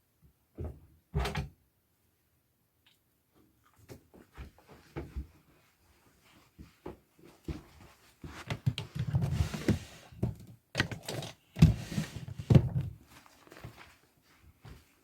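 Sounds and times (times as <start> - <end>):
rustling: 13.0 - 14.8.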